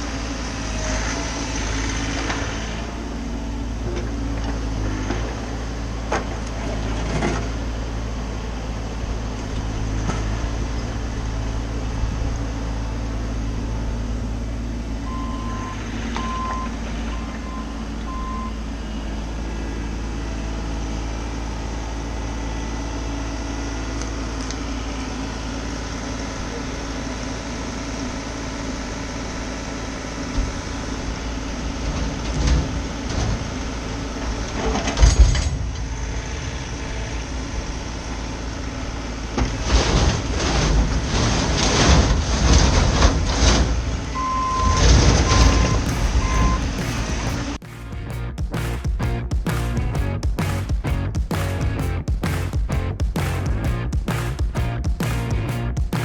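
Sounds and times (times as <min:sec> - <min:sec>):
excavator diesel engine running: 0:00.0 - 0:56.0
short beeps: 0:44.2 - 0:47.0.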